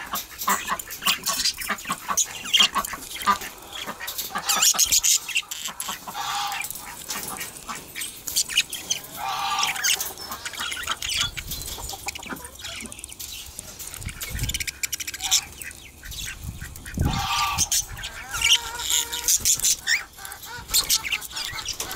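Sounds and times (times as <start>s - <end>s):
budgerigars chattering: 0.0s - 21.9s.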